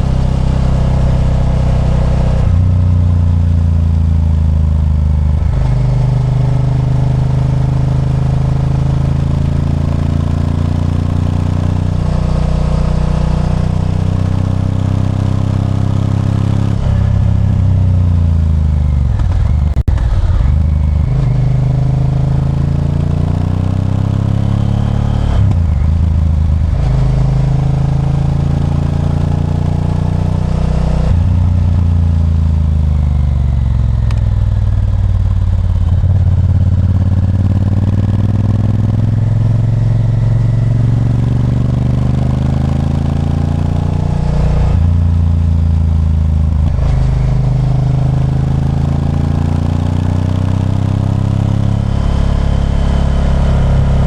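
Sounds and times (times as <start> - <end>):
motorcycle engine revving: 0.0 - 54.0.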